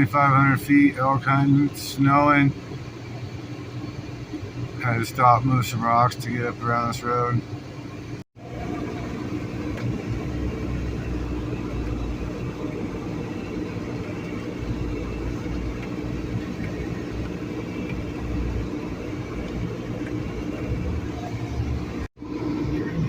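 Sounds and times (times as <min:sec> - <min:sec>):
vehicle engine hum: 0:00.0 - 0:23.0
tyres rumbling over ruts: 0:08.4 - 0:23.0.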